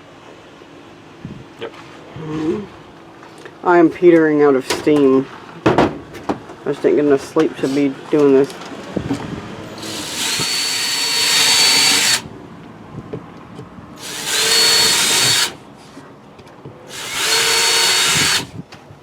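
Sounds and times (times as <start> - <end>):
power drill drilling into wood: 9.8 - 12.3, 14.0 - 15.6, 16.9 - 18.6.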